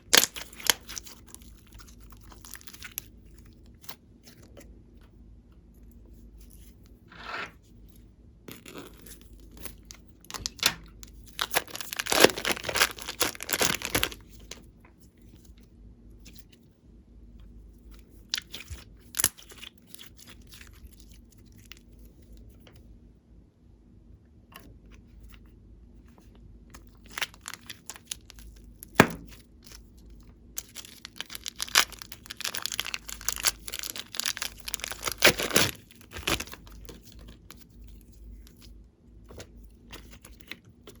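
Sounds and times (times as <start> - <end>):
slime crackling and popping: 0.0 - 3.1, 8.5 - 14.6, 26.9 - 29.8, 30.6 - 37.7.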